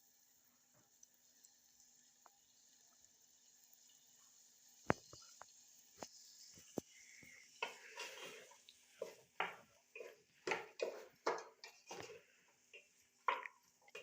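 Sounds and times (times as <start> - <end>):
onion frying in pot: 0.0 - 14.0
spoon scraping pot: 6.6 - 14.0
spoon knocking against pot: 9.0 - 12.2, 13.2 - 14.0.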